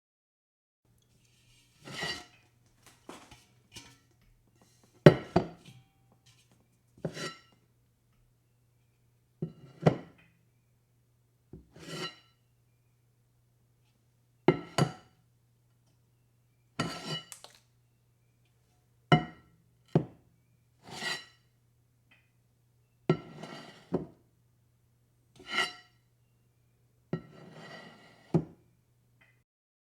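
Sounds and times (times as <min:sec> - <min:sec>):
metal bowl scraping: 0:01.1 - 0:07.5, 0:16.8 - 0:17.5, 0:27.2 - 0:28.3
metal bowl clanking: 0:01.8 - 0:06.0.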